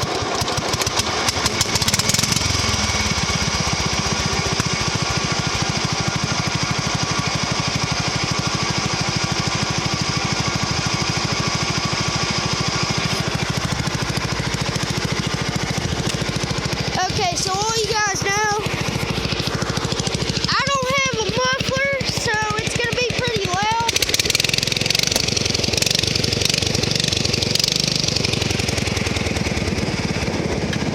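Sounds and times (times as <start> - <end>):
lawn mower engine running: 0.0 - 30.9.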